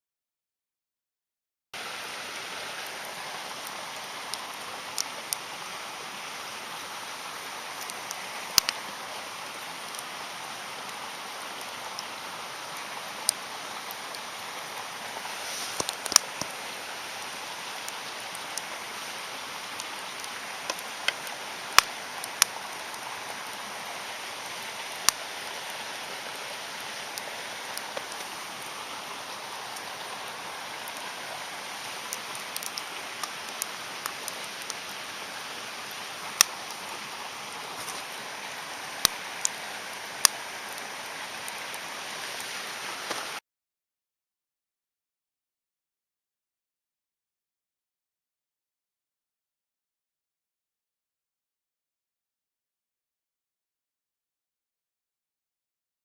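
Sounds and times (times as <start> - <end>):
campfire crackling and popping: 1.8 - 43.4.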